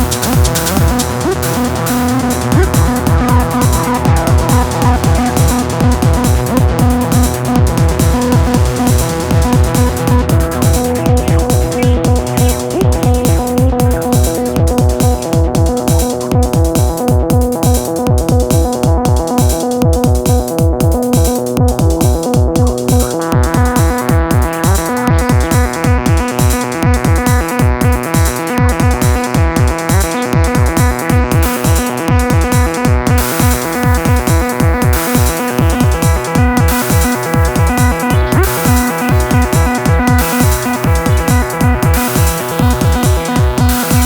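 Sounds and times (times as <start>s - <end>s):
kick-drum pulse: 0.0s - 44.0s
held synth tones: 0.8s - 14.8s
hissy high synth layer: 9.0s - 14.5s.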